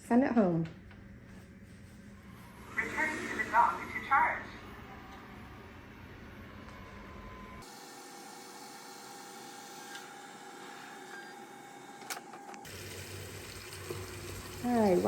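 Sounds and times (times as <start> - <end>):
robot vacuum whine: 2.4 - 5.2.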